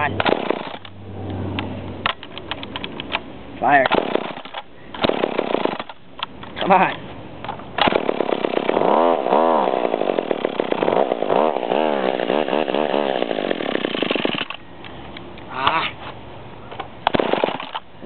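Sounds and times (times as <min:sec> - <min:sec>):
chainsaw running unevenly: 0:07.9 - 0:14.6.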